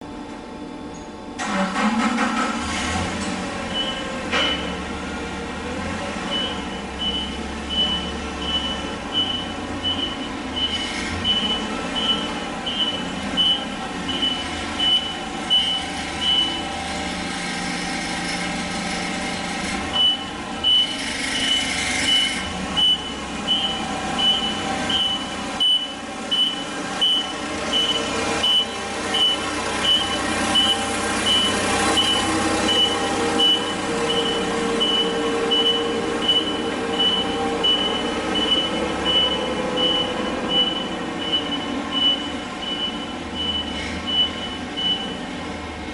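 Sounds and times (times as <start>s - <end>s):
truck engine running: 1.3s - 45.9s
truck back-up alarm beeping: 3.5s - 17.2s, 19.9s - 45.4s.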